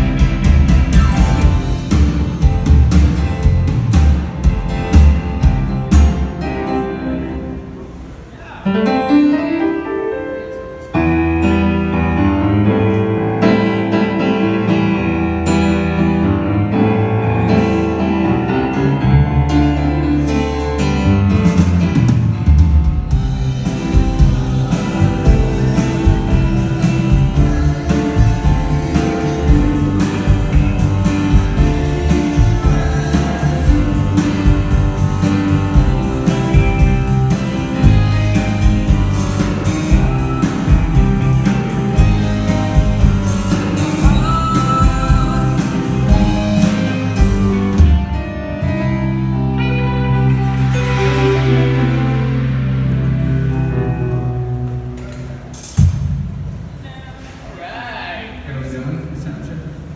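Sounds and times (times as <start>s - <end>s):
drums steady beat: 0.0s - 6.5s, 21.4s - 49.4s
rock band playing live: 0.0s - 8.2s, 11.0s - 56.8s.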